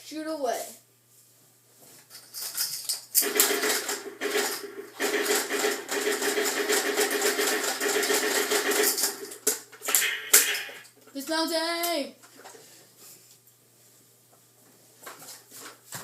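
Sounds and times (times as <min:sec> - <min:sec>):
toy machine gun rapid-fire shots: 0:03.2 - 0:10.9.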